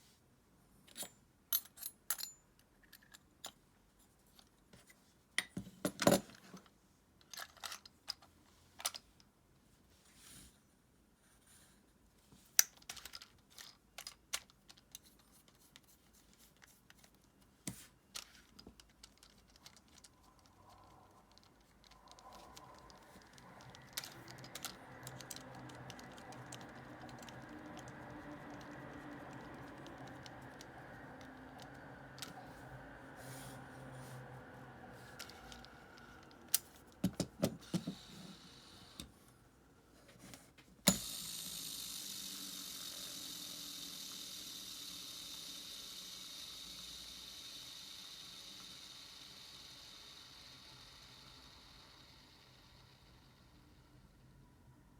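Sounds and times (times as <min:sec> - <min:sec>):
fishing reel spool whirring: 0:40.9 - 0:53.8.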